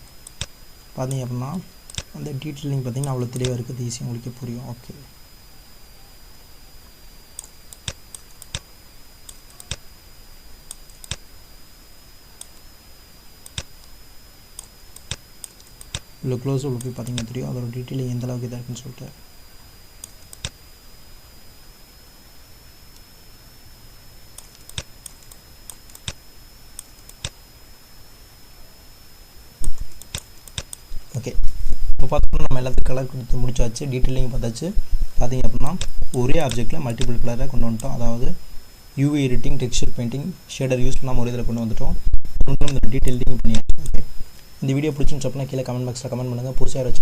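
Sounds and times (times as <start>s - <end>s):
faint high-pitched whine: 0.0s - 47.0s
computer mouse clicks: 0.2s - 1.3s, 1.9s - 2.2s, 3.0s - 3.6s, 7.3s - 9.9s, 10.7s - 11.3s, 12.4s - 12.6s, 13.4s - 14.0s, 14.6s - 16.1s, 16.8s - 17.3s, 20.0s - 20.6s, 24.3s - 27.4s, 29.6s - 30.8s, 35.7s - 37.2s
mouse and keyboard clicks: 9.3s - 9.8s
light keyboard ticks: 35.8s - 37.2s.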